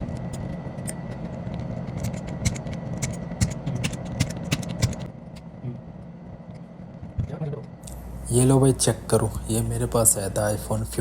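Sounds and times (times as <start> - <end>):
steady low hum: 0.0 - 11.0
sharp clicks and taps: 2.0 - 5.5.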